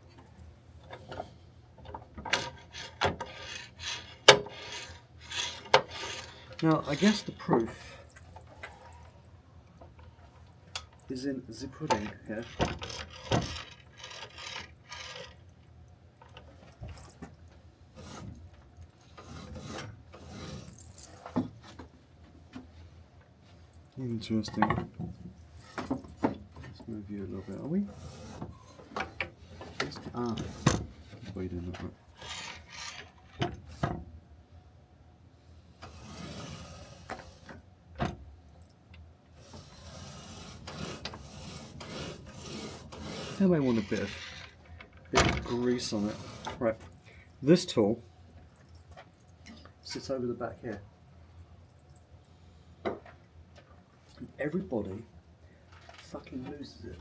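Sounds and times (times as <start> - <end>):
saw parts clicking and knocking: 0.2 - 7.8, 11.8 - 17.4, 32.2 - 33.8, 40.6 - 47.0
miter saw parts scraping: 0.8 - 9.1, 10.8 - 15.5, 17.9 - 21.8, 25.5 - 31.5, 32.1 - 33.8, 35.8 - 37.6, 39.4 - 47.8, 55.7 - 57.0.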